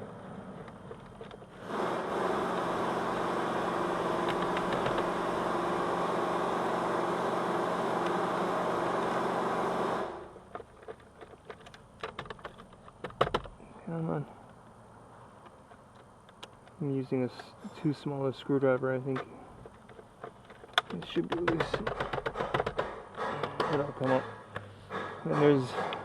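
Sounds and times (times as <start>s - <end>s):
motor-driven machine humming: 1.0s - 10.4s.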